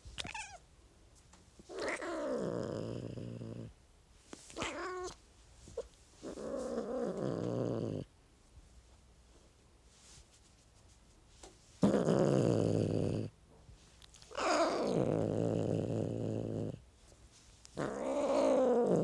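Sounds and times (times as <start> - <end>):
cat growling and yowling: 1.7 - 3.6, 4.6 - 5.2, 14.3 - 16.8, 17.8 - 19.0.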